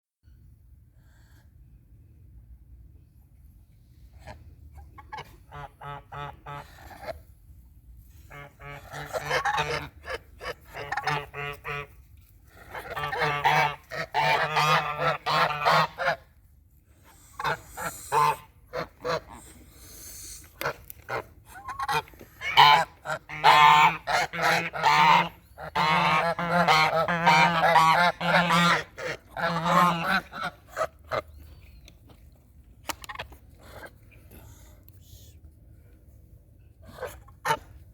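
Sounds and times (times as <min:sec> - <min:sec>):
geese honking: 0:05.0 - 0:06.8, 0:08.3 - 0:12.0, 0:12.7 - 0:16.3, 0:17.3 - 0:19.6, 0:20.6 - 0:31.3.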